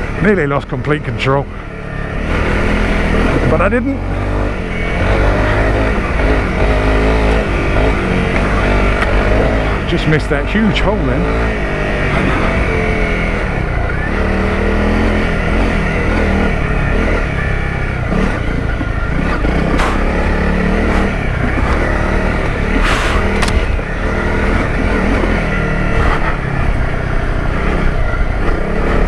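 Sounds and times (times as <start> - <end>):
motorcycle engine revving: 0.0 - 29.0
sharp knocks: 18.8 - 20.2.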